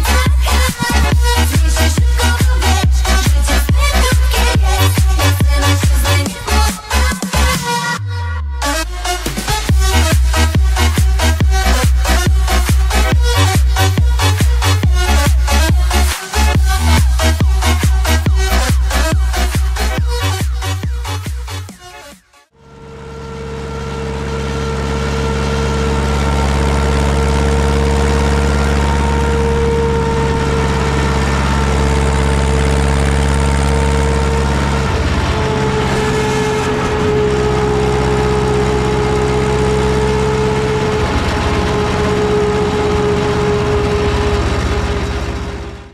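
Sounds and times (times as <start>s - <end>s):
tractor diesel engine running: 0.0s - 21.8s, 22.5s - 45.9s
steady whine: 22.6s - 45.9s.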